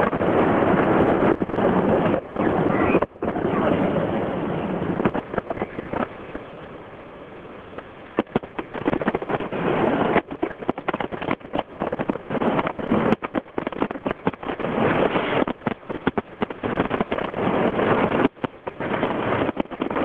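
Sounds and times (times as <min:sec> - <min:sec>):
fireworks bursting and crackling: 0:00.0 - 0:20.0
sharp cracks and bangs: 0:08.2 - 0:20.0.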